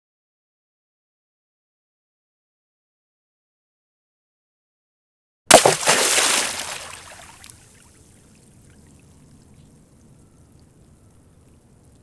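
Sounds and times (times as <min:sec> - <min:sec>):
water pouring: 0:05.5 - 0:07.6
faint water trickle: 0:05.5 - 0:12.0.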